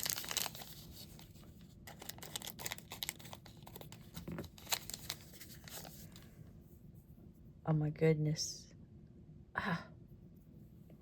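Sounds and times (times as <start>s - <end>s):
plastic packaging crinkling and tearing: 0.0s - 6.2s.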